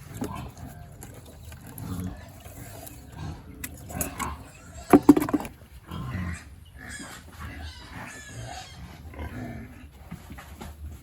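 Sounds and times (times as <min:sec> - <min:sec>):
pigs grunting and calling: 0:00.0 - 0:10.0.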